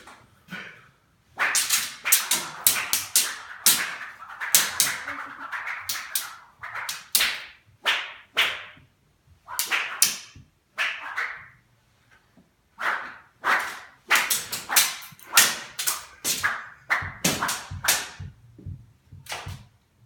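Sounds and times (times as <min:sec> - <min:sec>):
whip cracks: 0:01.4 - 0:08.9, 0:09.5 - 0:11.6, 0:12.8 - 0:18.4, 0:19.2 - 0:19.7.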